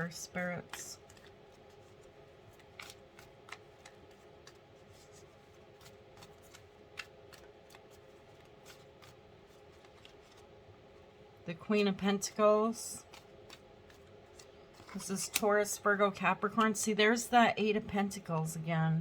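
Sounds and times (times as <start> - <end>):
faint room hum: 0.0 - 19.0
cards clicking and snapping: 0.4 - 10.5, 13.1 - 15.4.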